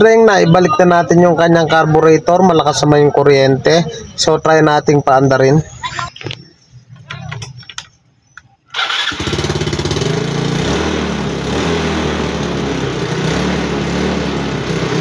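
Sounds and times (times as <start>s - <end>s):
scooter engine starting and running: 8.7s - 15.0s.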